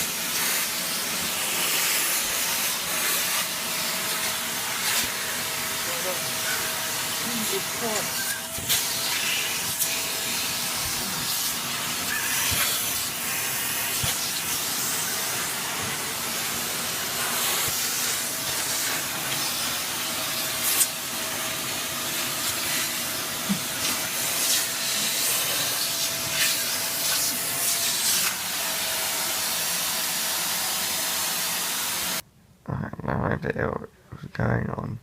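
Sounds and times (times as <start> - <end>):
vacuum cleaner running: 0.0 - 32.2.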